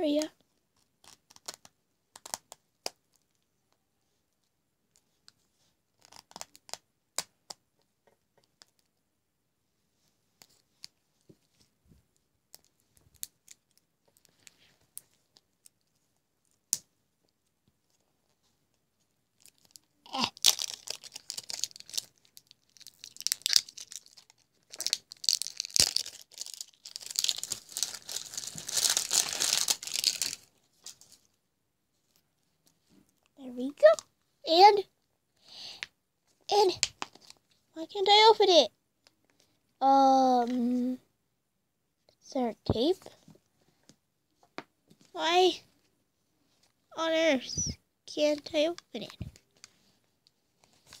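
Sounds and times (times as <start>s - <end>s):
packaging wrap tearing and crinkling: 1.0s - 2.5s, 19.4s - 31.2s.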